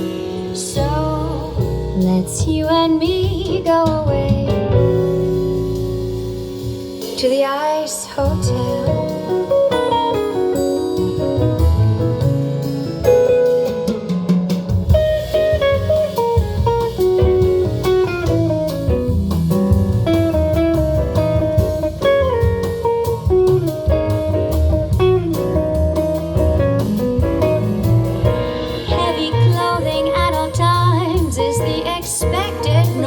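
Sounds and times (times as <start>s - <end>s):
jazz ballad over loudspeakers: 0.0s - 33.0s
guitar melody: 14.9s - 30.0s.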